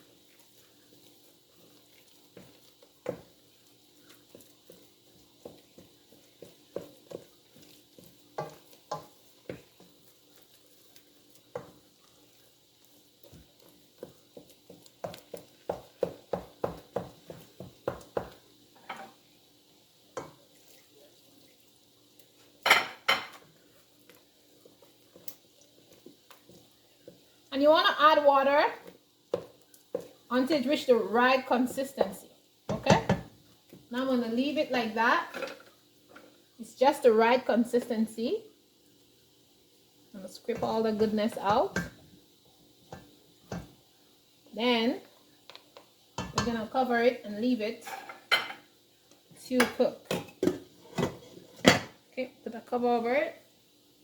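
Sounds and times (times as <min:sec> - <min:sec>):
spoon knocking against pot: 0:14.0 - 0:19.1, 0:32.7 - 0:33.3.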